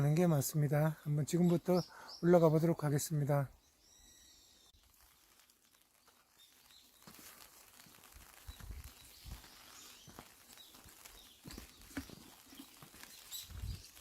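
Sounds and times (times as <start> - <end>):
faint birdsong: 0.0 - 7.4, 8.4 - 14.0
footsteps on a path: 6.9 - 14.0.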